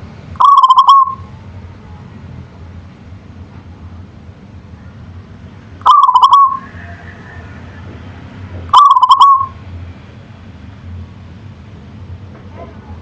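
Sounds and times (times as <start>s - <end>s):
dove cooing: 0.4s - 1.3s, 5.8s - 7.0s, 8.7s - 9.6s.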